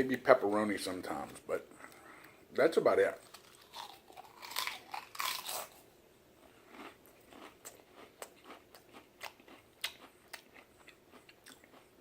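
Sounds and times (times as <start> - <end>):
chewing crisps crunching: 3.2 - 5.8, 6.7 - 11.9.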